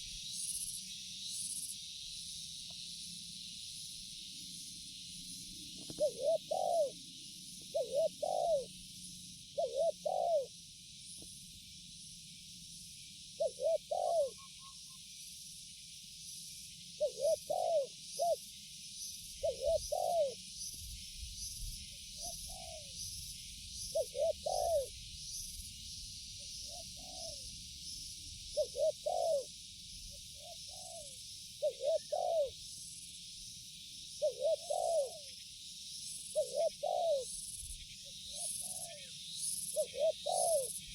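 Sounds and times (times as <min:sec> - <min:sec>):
dove cooing: 0:05.8 - 0:08.8, 0:09.5 - 0:10.5, 0:13.4 - 0:14.6, 0:17.0 - 0:18.4, 0:19.4 - 0:20.4, 0:22.2 - 0:23.0, 0:23.9 - 0:25.0, 0:26.7 - 0:27.5, 0:28.5 - 0:29.6, 0:30.4 - 0:32.6, 0:34.2 - 0:35.3, 0:36.4 - 0:37.4, 0:38.3 - 0:39.1, 0:39.8 - 0:40.8.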